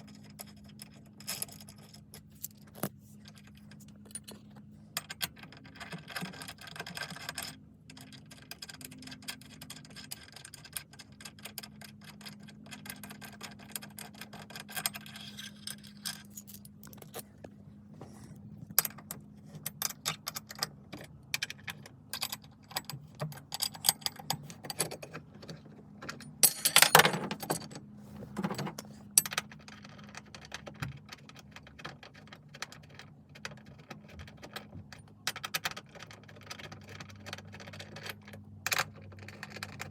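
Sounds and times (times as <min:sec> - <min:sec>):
metal tools clicking and clinking: 0:26.1 - 0:27.8.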